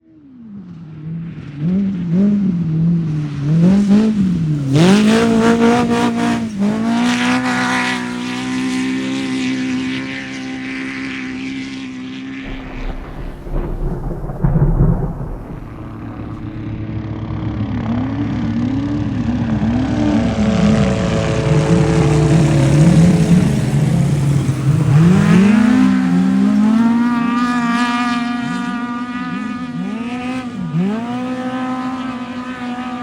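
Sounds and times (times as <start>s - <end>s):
deep engine rumble: 12.5s - 26.2s
engine revving: 18.0s - 33.0s.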